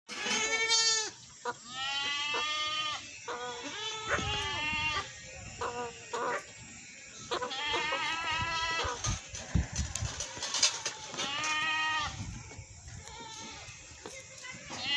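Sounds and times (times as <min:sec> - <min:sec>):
goats bleating: 0:00.1 - 0:06.4, 0:07.3 - 0:12.2, 0:12.9 - 0:14.9.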